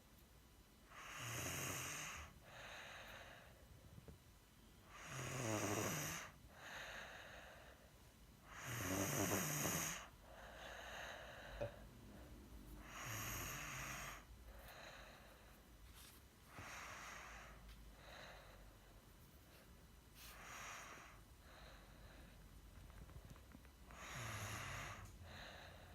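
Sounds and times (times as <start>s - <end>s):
loud rattling snores: 1.0s - 2.3s, 5.0s - 6.4s, 8.5s - 10.1s, 12.8s - 14.2s
soft breathing: 1.8s - 4.2s, 6.0s - 25.9s.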